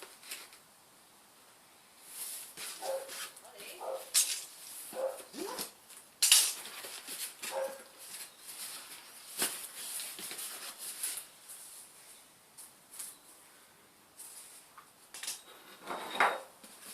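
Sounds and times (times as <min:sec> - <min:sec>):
dog whining and yipping: 0:05.0 - 0:05.7.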